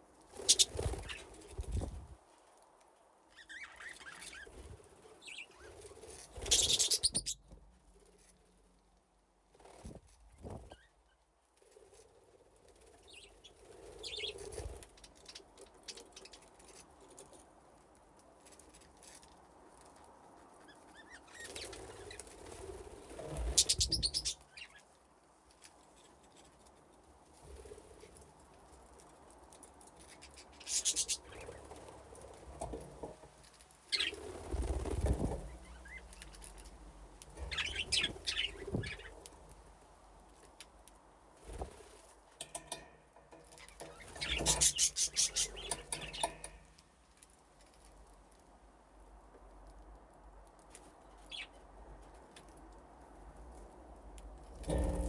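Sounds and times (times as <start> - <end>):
wing flapping: 0.4 - 2.2, 6.1 - 7.3, 21.4 - 24.4, 33.9 - 36.7, 37.4 - 39.2
budgerigars chirping: 0.5 - 0.8, 6.5 - 7.4, 23.5 - 24.4, 30.7 - 31.4, 37.5 - 39.1, 44.2 - 46.4.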